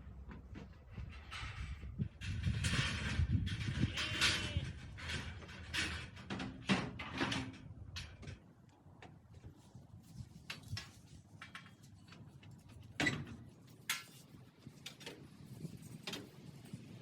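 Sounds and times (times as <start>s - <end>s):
metallic clattering and knocks: 0.2s - 8.5s.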